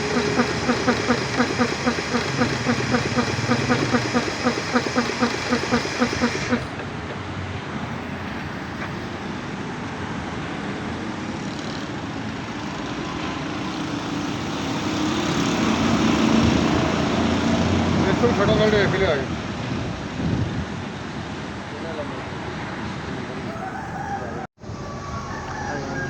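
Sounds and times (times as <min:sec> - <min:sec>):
compressor pulsing: 0:00.0 - 0:07.2
rushing machine noise: 0:00.0 - 0:19.0.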